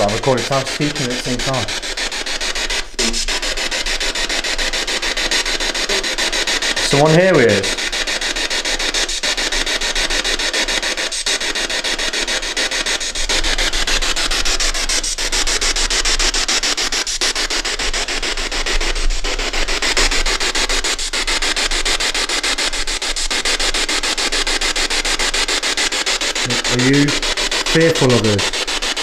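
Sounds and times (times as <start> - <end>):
stuttering radio static: 0.0 - 4.9, 5.5 - 7.9, 26.4 - 28.8.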